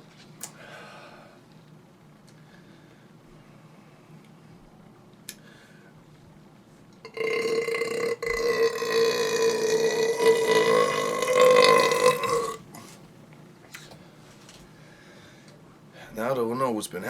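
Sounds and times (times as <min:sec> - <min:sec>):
man burping loudly: 0:07.1 - 0:13.0.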